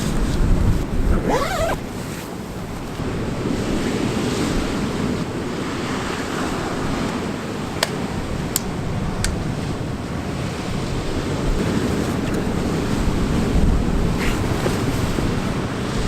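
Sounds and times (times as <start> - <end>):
wind buffeting microphone: 0.0 - 5.0
stormy sea waves breaking: 1.8 - 16.0.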